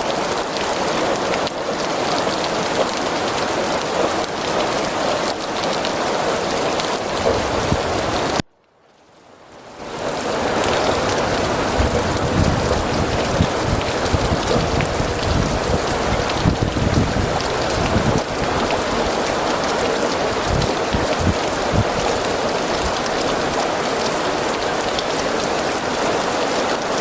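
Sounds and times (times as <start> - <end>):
steady rain falling: 0.0 - 27.0
low rumble of thunder: 7.2 - 8.4, 10.8 - 19.2, 20.4 - 23.5.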